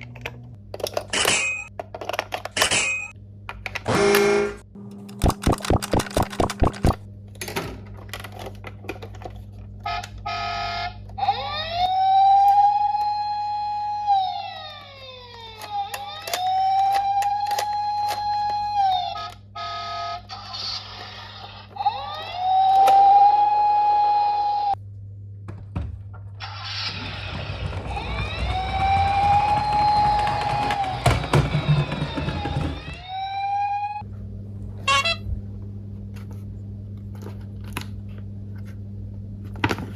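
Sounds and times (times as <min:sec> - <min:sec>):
toy electronic siren: 0:09.8 - 0:24.8, 0:26.5 - 0:34.0.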